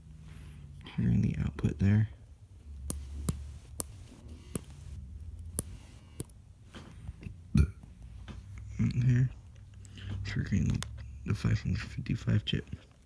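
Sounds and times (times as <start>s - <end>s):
sharp clicks: 2.9s - 5.0s, 5.6s - 6.4s.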